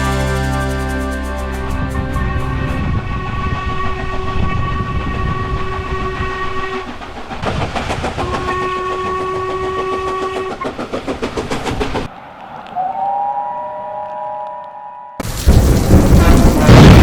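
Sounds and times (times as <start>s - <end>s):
train horn blasts: 0.2s - 6.9s, 8.2s - 10.6s, 16.1s - 17.0s
train wheels clickety-clack: 3.5s - 5.0s, 6.4s - 12.1s.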